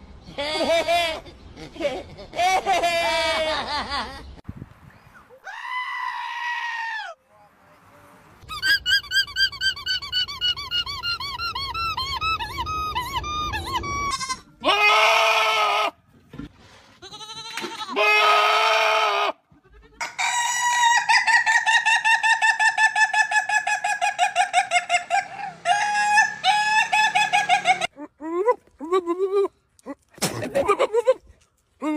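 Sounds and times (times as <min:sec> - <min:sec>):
animal chirps: 0:08.5 - 0:14.3.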